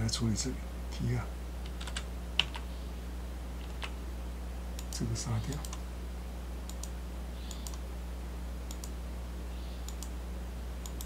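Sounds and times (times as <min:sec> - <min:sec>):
low electrical hum: 0:00.0 - 0:11.0
computer mouse clicking: 0:04.8 - 0:05.8, 0:06.7 - 0:06.9, 0:07.5 - 0:07.8, 0:08.7 - 0:09.0, 0:09.9 - 0:10.1.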